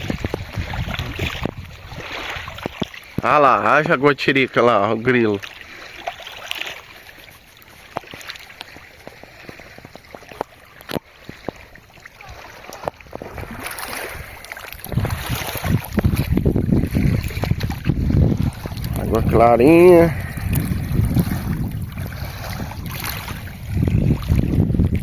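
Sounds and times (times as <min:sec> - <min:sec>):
wind buffeting microphone: 0:00.0 - 0:03.2, 0:12.2 - 0:25.0.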